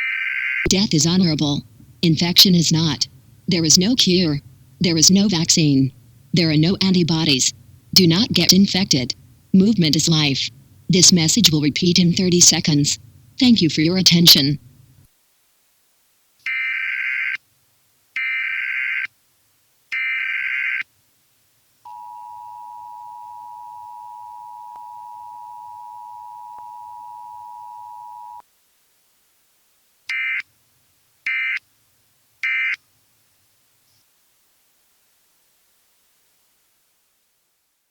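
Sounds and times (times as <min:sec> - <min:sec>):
two-tone attention signal: 0:21.9 - 0:28.4.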